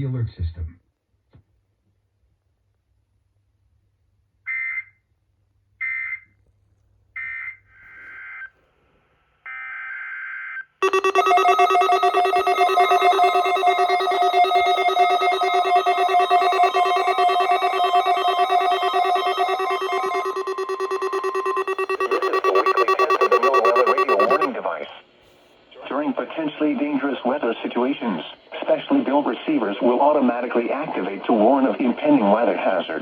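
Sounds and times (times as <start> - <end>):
electronic data squawks: 10.8 - 24.5
loud steady buzzing alert tone: 10.8 - 24.5.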